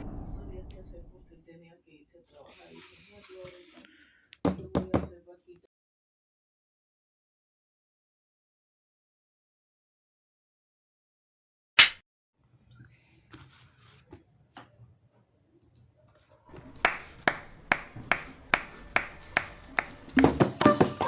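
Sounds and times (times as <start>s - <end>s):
handling rubs and taps: 16.5s - 20.4s.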